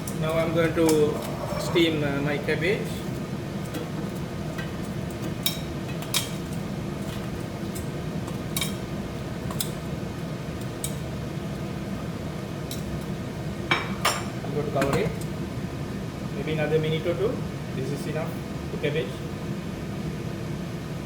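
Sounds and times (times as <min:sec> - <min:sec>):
utensils clinking against pot: 0:00.0 - 0:02.1, 0:03.6 - 0:08.8, 0:13.7 - 0:15.4
steady low hum: 0:00.0 - 0:21.0.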